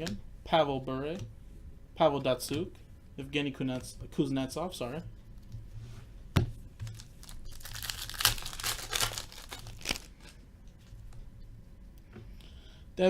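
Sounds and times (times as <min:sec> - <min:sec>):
wrapper crinkling and tearing: 0:06.9 - 0:10.4.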